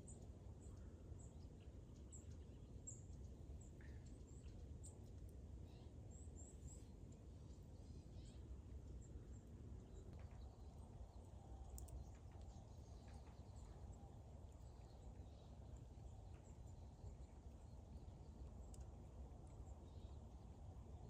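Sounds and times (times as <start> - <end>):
faint bird chirps: 0.0 - 21.0
faint small clicks: 11.6 - 13.9, 18.4 - 19.6.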